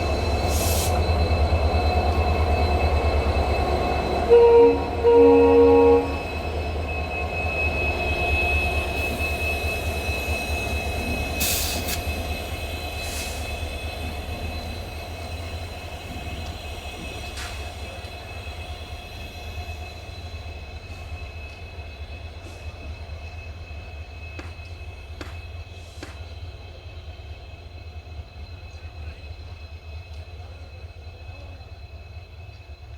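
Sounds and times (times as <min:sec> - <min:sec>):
locomotive horn blast: 0:04.3 - 0:06.3.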